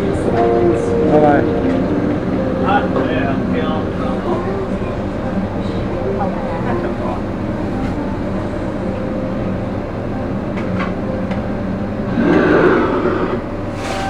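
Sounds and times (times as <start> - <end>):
steady mechanical rumble: 0.0 - 14.0.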